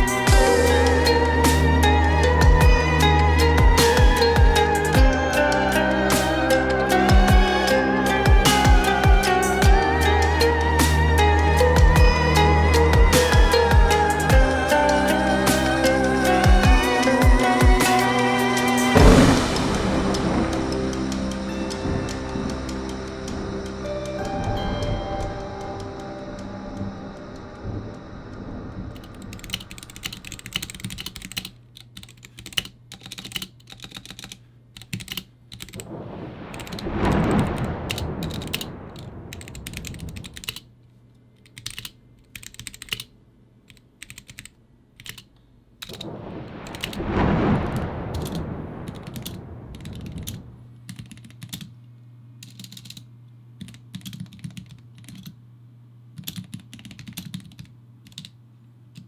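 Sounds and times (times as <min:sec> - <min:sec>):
rushing swells of noise: 0:12.4 - 0:30.5, 0:35.8 - 0:40.6, 0:46.0 - 0:50.7
faint low hum: 0:19.0 - 0:59.0
mechanical keyboard typing: 0:29.0 - 0:35.8, 0:37.9 - 0:40.6, 0:41.4 - 0:43.1, 0:43.7 - 0:46.0, 0:48.2 - 0:51.7, 0:52.4 - 0:55.4, 0:56.2 - 0:58.3.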